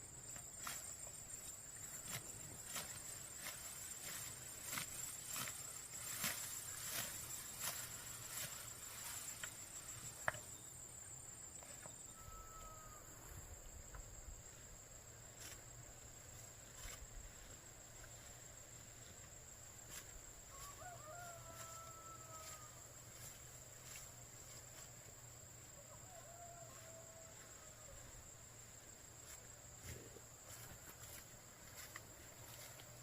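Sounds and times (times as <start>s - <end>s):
rooster crowing faintly: 11.8s - 13.2s, 20.5s - 23.4s, 25.6s - 28.3s.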